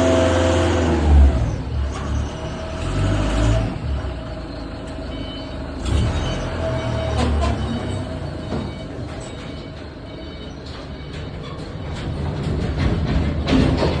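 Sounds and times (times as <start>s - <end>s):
heavy machinery rumbling: 0.0s - 14.0s
knocks and clanks: 7.0s - 14.0s.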